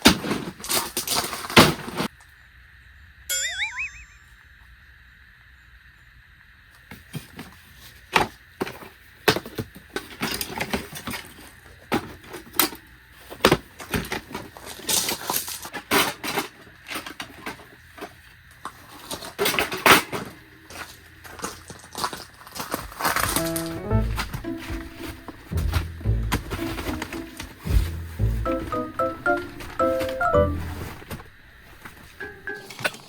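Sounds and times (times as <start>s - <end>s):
rustling and scraping: 29.5s - 32.2s.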